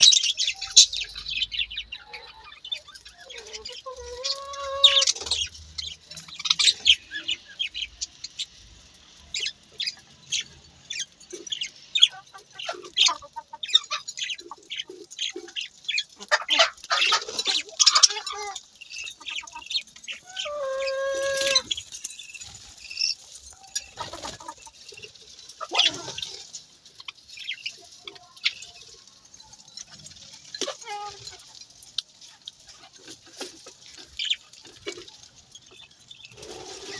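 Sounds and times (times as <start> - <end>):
budgerigars chattering: 0.0 - 8.5.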